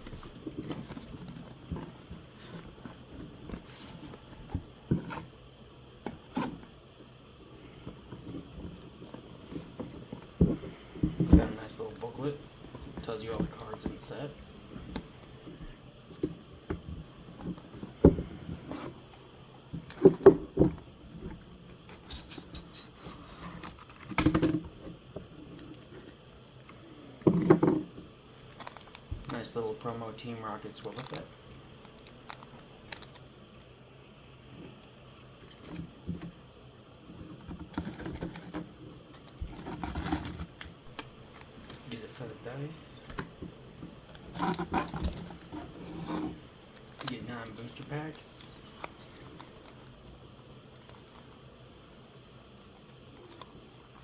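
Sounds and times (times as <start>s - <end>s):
packaging being handled: 0.0s - 0.3s, 10.6s - 15.5s, 28.4s - 33.2s, 40.9s - 49.8s
sliding paper rustle: 0.0s - 0.3s, 10.6s - 15.5s, 28.3s - 33.2s, 40.9s - 49.8s.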